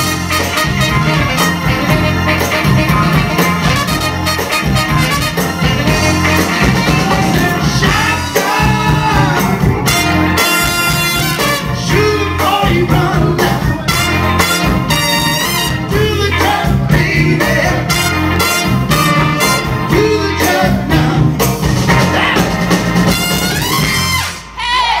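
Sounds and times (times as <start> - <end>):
horns playing: 0.0 - 8.1, 9.8 - 12.0, 13.9 - 16.0, 17.9 - 20.0, 23.0 - 25.0
bass guitar: 0.0 - 25.0
drums: 0.0 - 25.0
person singing: 6.0 - 9.8, 11.7 - 14.0, 15.9 - 18.0, 19.8 - 22.6.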